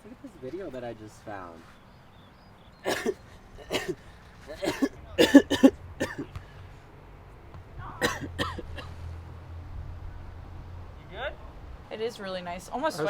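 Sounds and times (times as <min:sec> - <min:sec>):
person coughing: 0:02.8 - 0:06.3, 0:08.0 - 0:08.9.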